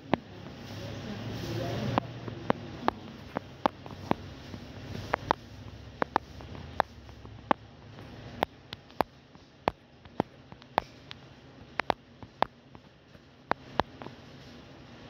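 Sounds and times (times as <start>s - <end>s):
sharp short clicks and taps: 2.0s - 14.2s.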